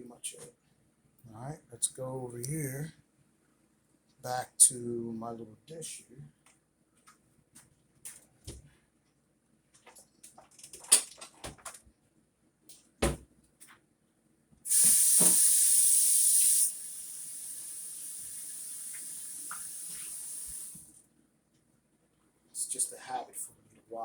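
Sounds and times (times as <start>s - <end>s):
tap water running onto plate: 17.4s - 20.9s.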